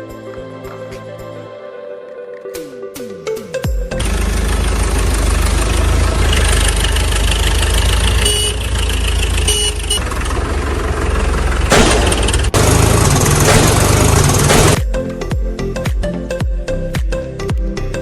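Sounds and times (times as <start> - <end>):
heavy vehicle engine running: 3.9 - 14.8.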